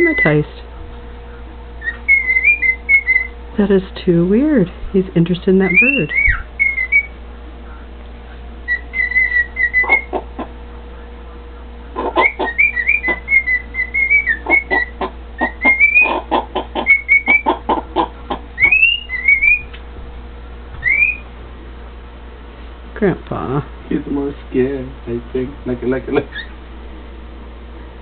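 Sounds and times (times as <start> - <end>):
cockatiel whistling: 0.0 - 0.4, 1.8 - 3.3, 5.6 - 7.1, 8.7 - 10.2, 12.0 - 19.7, 20.8 - 21.3, 26.3 - 26.5
bird chirps: 1.8 - 3.3, 5.6 - 7.2, 8.7 - 10.5, 12.0 - 19.8, 20.8 - 21.3.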